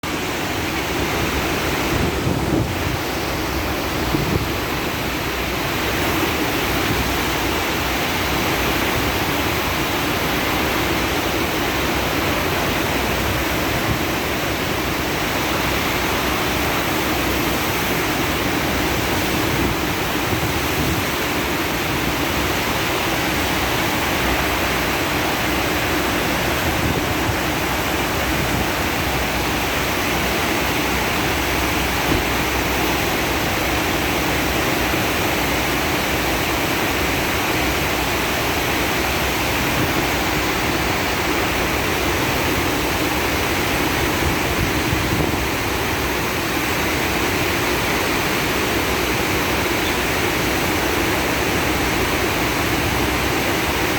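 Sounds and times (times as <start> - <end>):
surf waves breaking: 0.0 - 53.9
wind on microphone: 0.1 - 7.4, 12.0 - 23.4, 24.2 - 33.0, 42.8 - 46.8.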